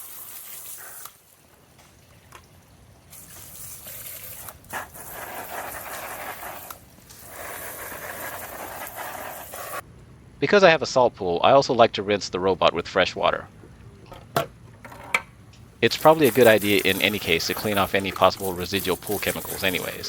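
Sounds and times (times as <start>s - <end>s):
running water rinsing: 0.0s - 9.8s, 15.8s - 20.0s.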